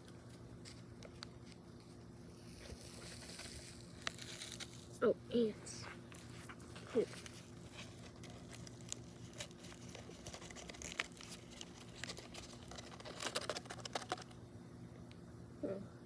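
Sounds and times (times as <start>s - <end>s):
paper crinkling and rustling: 0.6s - 5.0s, 5.8s - 14.4s.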